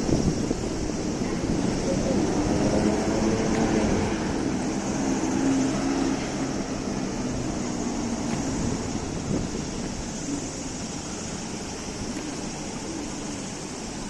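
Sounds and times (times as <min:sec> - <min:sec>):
street noise: 0:00.0 - 0:14.0
vehicle passing by: 0:01.5 - 0:09.4.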